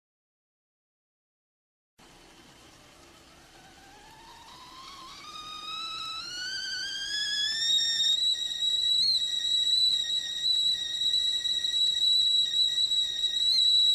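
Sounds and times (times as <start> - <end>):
whistling kettle: 2.1 - 13.9.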